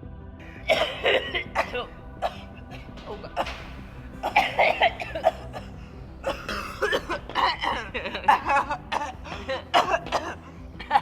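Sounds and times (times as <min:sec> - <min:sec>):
person coughing: 0:00.6 - 0:11.0
person chuckling: 0:07.5 - 0:09.9.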